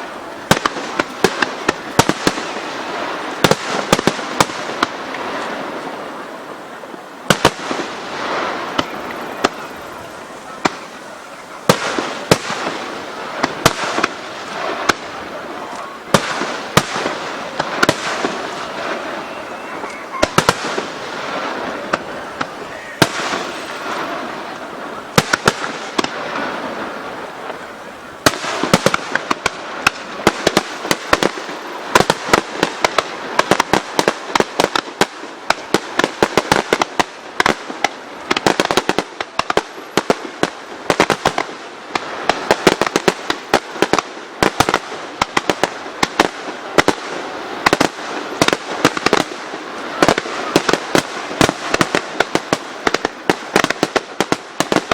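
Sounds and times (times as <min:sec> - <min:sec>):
fireworks bursting with crackle: 0:00.0 - 0:54.9.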